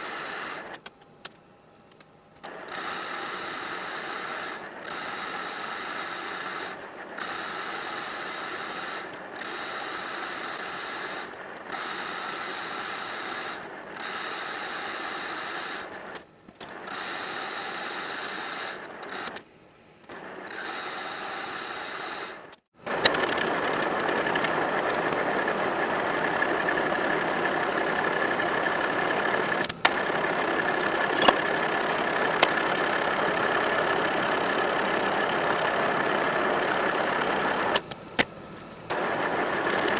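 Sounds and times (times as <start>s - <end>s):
machine tool geared whir: 22.8s - 38.3s, 38.9s - 39.9s
high mechanical whine: 22.8s - 39.9s.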